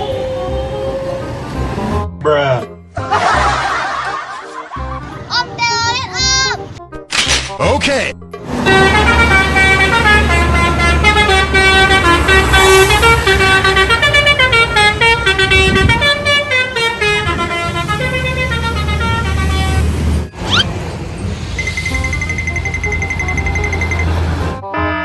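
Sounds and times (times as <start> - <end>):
musical air horn tune: 8.4 - 20.6
low engine hum: 8.4 - 24.6.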